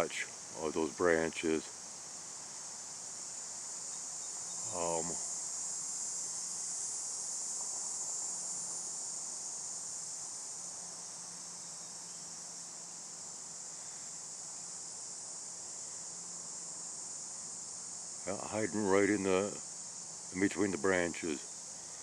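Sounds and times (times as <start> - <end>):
insects chirping: 0.0 - 22.0
faint low hum: 18.2 - 19.7.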